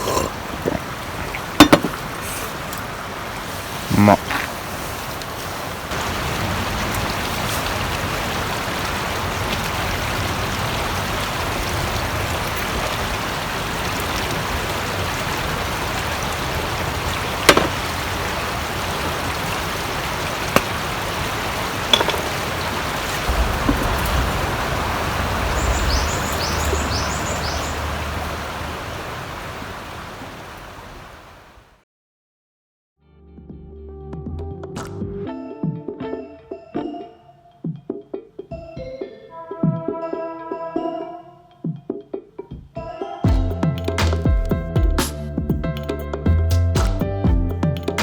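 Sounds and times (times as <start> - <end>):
river water flowing: 0.0 - 31.6.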